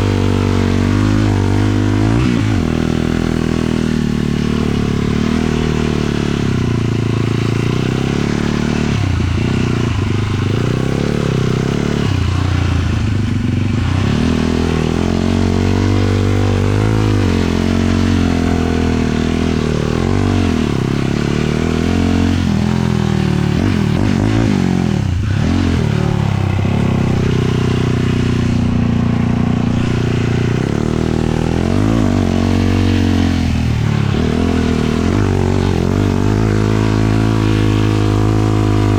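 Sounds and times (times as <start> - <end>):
quad engine revving: 0.0 - 38.9.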